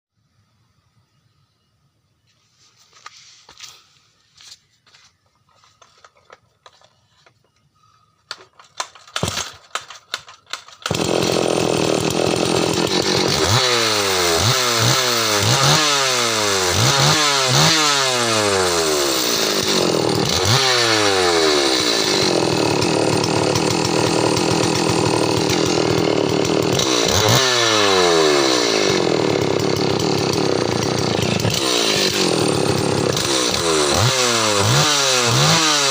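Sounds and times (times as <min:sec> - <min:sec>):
handling clicks and knocks: 0:08.3 - 0:10.9
chainsaw engine revving: 0:08.8 - 0:35.9.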